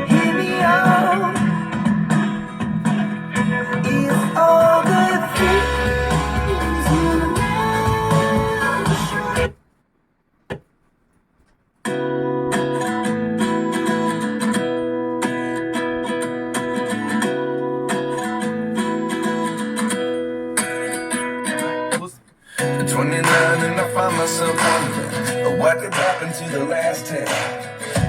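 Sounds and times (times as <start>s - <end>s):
song from a speaker: 0.0s - 9.6s, 22.6s - 28.0s
strummed acoustic guitar: 0.0s - 9.6s, 11.8s - 28.0s.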